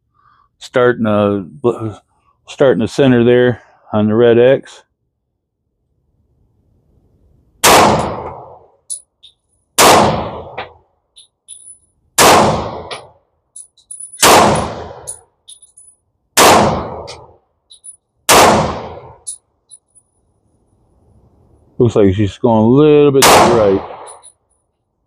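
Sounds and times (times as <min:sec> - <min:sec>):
pistol shots: 0:07.6 - 0:08.6, 0:09.8 - 0:10.7, 0:12.2 - 0:13.1, 0:14.2 - 0:15.1, 0:16.4 - 0:17.3, 0:18.3 - 0:19.2, 0:23.2 - 0:24.3
faint high clinks: 0:11.2 - 0:12.0, 0:13.5 - 0:14.2, 0:15.0 - 0:16.1, 0:17.7 - 0:18.1, 0:19.2 - 0:20.7.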